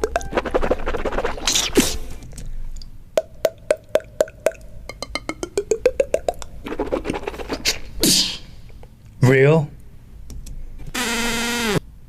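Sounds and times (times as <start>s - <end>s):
beatboxer mouth clicks: 0.0s - 7.9s.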